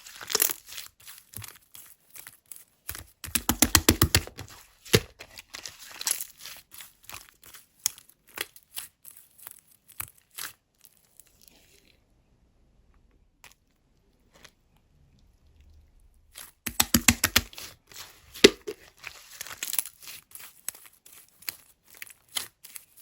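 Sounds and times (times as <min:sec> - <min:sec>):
slime squeezed clicking and popping: 0:16.7 - 0:17.5.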